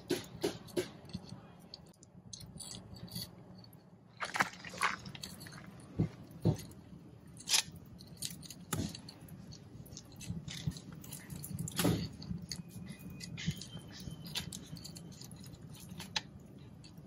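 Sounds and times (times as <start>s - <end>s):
sharp clicks and knocks: 0.0s - 3.0s.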